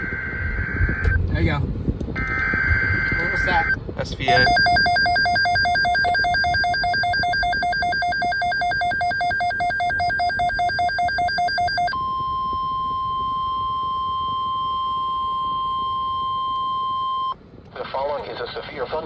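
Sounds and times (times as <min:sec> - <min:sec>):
steady alarm tone: 0:02.2 - 0:17.4
rapid electronic alert beeping: 0:02.4 - 0:15.7.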